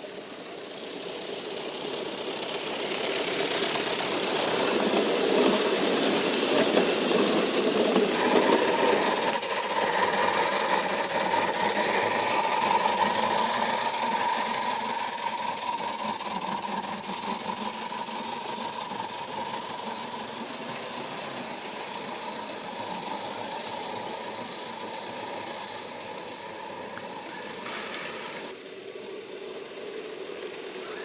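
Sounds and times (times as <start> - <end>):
steam locomotives running: 0.0 - 31.0.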